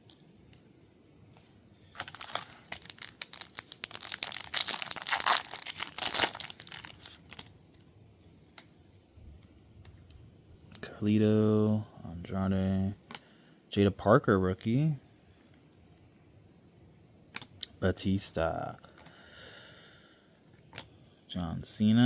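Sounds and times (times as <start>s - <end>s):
card pack wrapper tearing: 2.0s - 7.5s.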